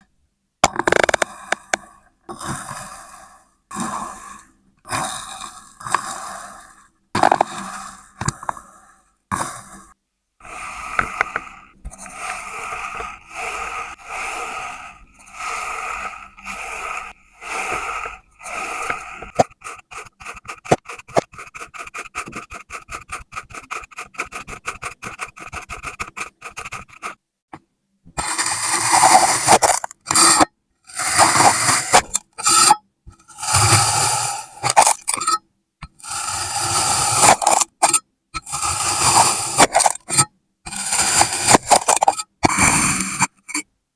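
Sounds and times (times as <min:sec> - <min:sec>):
sand scraping: 0:10.4 - 0:27.2, 0:28.2 - 0:43.6.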